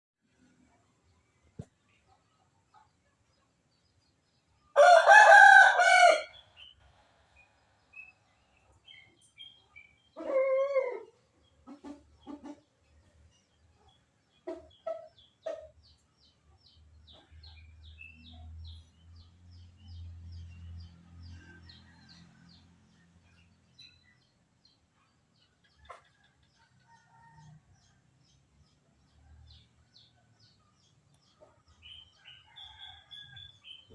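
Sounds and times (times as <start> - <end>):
rooster crowing: 4.8 - 6.4, 32.2 - 33.8
small birds chirping: 6.3 - 22.6, 23.2 - 33.9.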